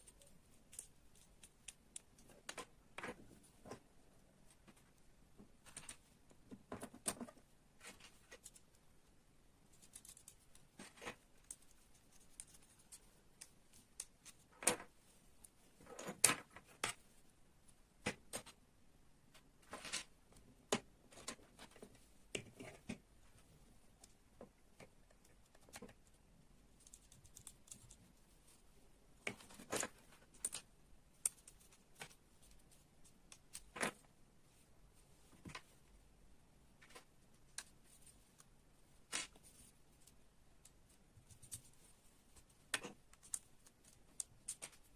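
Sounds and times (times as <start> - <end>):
plastic parts clicking and rattling: 29.2 - 34.1, 36.8 - 44.9.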